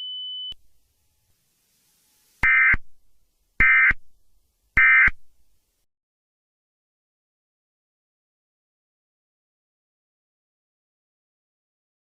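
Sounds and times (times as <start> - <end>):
harsh electronic data bursts: 2.4 - 2.9, 3.6 - 4.0, 4.8 - 5.2.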